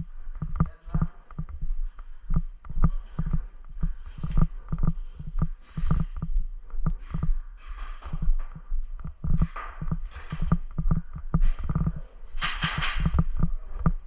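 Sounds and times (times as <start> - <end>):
footsteps: 0.0 - 14.0.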